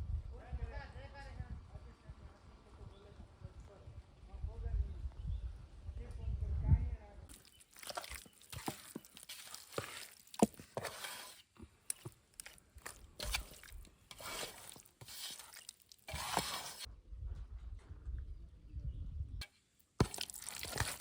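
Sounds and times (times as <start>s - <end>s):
food rustling: 7.3s - 16.9s, 20.0s - 21.0s
utensils scraping: 7.3s - 16.9s.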